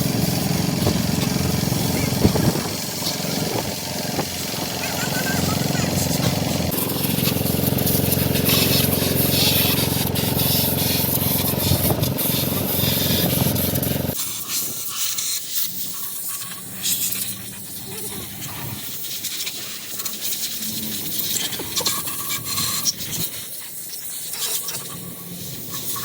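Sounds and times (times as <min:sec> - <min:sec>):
machine humming and hissing: 0:00.0 - 0:14.8.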